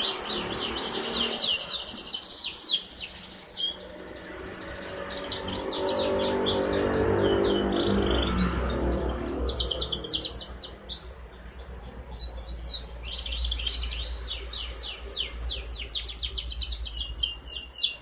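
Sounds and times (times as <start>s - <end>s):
canary singing trills: 0.0s - 18.0s.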